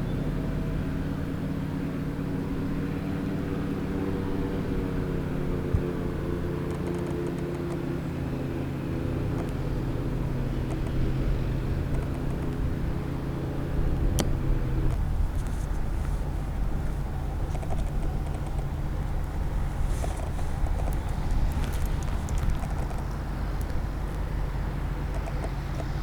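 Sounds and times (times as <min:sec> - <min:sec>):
aircraft engine droning: 0:00.0 - 0:26.0
sharp click: 0:06.7 - 0:07.9, 0:11.9 - 0:12.6, 0:17.5 - 0:18.7, 0:25.1 - 0:26.0
low rumble: 0:09.3 - 0:26.0.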